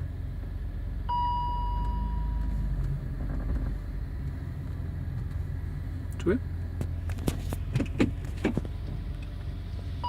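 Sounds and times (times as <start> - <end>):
car cabin rumble: 0.0 - 10.0
electronic chime tone: 1.1 - 2.5.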